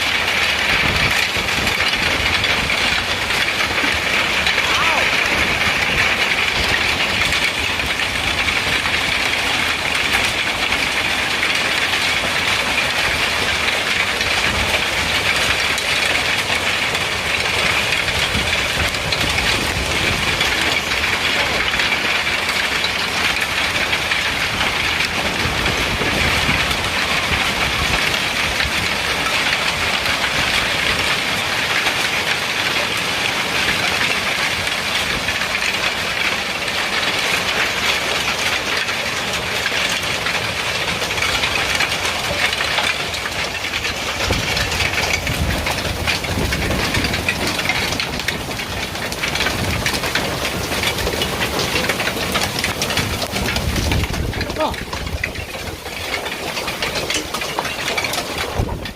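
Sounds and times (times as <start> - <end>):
hailstones clattering: 0.0 - 58.9.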